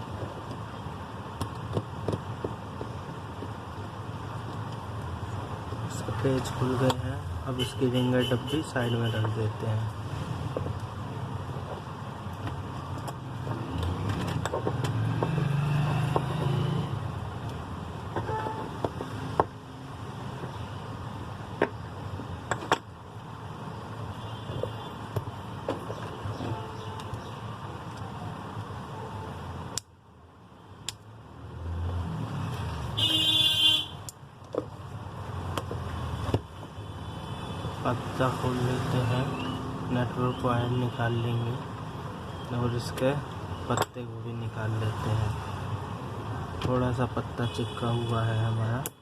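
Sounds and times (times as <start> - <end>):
traffic rumble: 0.0 - 49.0
vehicle horn honking: 18.2 - 18.7, 33.0 - 34.0.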